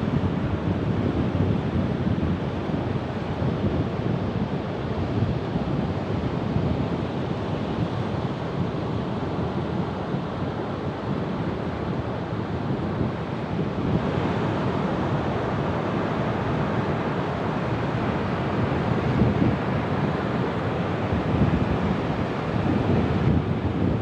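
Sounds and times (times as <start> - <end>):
wind rumbling on microphone: 13.0 - 24.0.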